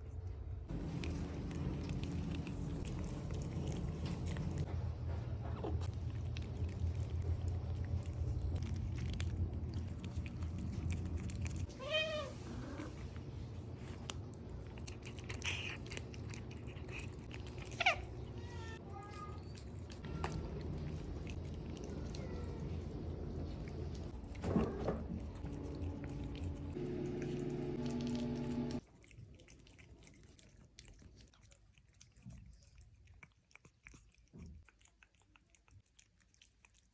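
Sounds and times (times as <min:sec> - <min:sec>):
low steady hum: 0:00.0 - 0:28.9
cat licking and smacking: 0:00.7 - 0:04.7, 0:05.7 - 0:36.9
cat meowing: 0:11.7 - 0:12.9.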